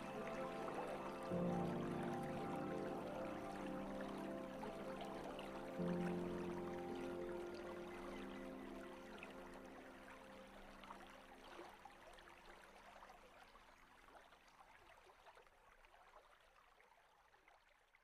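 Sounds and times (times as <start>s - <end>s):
slowed reverb pop song: 0.0s - 9.6s
soft hiss with crackles: 0.0s - 12.7s.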